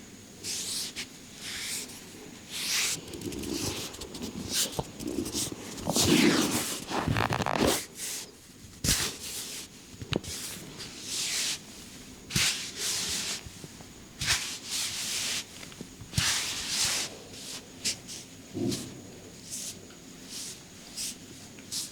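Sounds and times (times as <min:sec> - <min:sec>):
hands rubbing skin and hair: 0:00.4 - 0:07.9, 0:08.8 - 0:13.6, 0:14.2 - 0:18.3.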